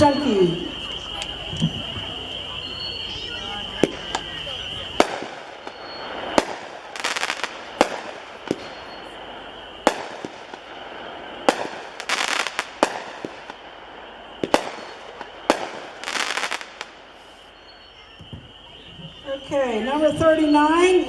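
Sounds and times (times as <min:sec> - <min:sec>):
firework crackle: 0:00.0 - 0:21.0
firework cake shots firing: 0:03.8 - 0:09.0, 0:09.8 - 0:10.7, 0:11.4 - 0:13.7, 0:14.4 - 0:17.0.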